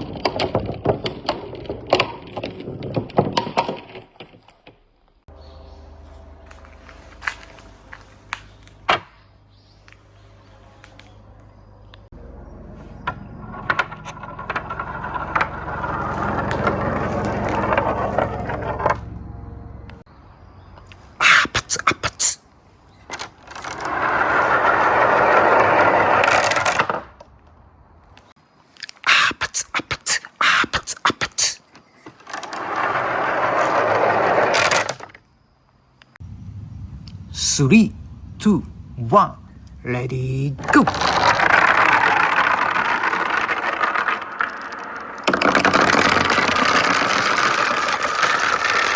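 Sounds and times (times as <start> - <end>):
marbles rolling on rails: 0.0 - 4.6, 12.6 - 20.0, 21.6 - 28.2, 30.8 - 35.4, 40.6 - 48.9
marbles clicking and clattering: 13.0 - 19.0, 31.4 - 35.2, 40.6 - 48.9.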